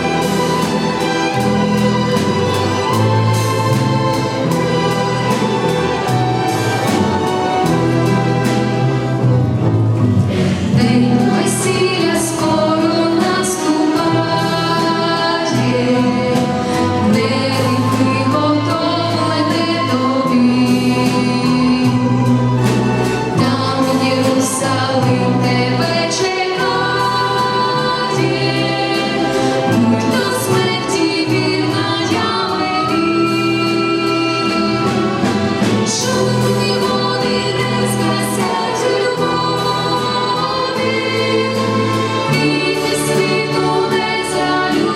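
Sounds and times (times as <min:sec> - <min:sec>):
orchestral accompaniment: 0:00.0 - 0:44.9
choir singing a hymn: 0:10.2 - 0:44.9.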